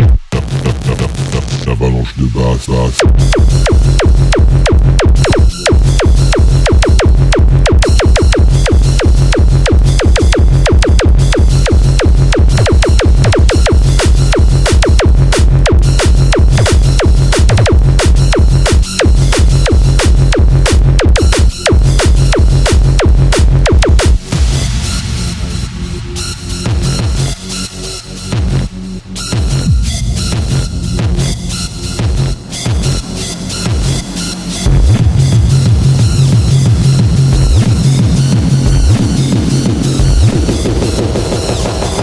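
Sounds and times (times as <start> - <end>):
hard kick drum pounding: 0.0 - 25.2, 34.7 - 42.0
heavy synth bass: 0.0 - 42.0.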